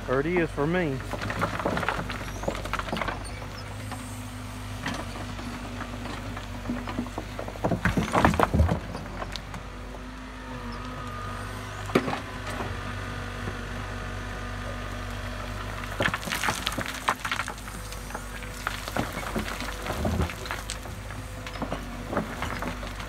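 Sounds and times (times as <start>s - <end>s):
excavator diesel engine running: 0.0s - 23.0s
knocking and clatter on rocks: 5.8s - 9.4s, 15.7s - 23.0s.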